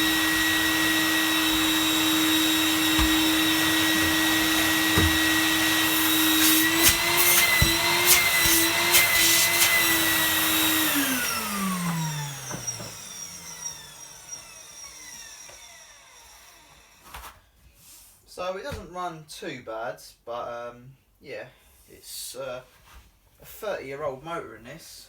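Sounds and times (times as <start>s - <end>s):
vacuum cleaner motor whine: 0.0s - 17.4s.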